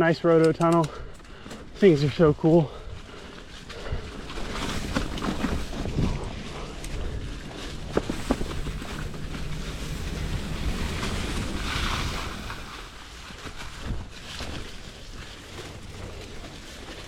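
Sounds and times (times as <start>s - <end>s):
bike tyres rumbling on dirt: 1.0s - 17.0s
wind on microphone: 3.7s - 13.1s.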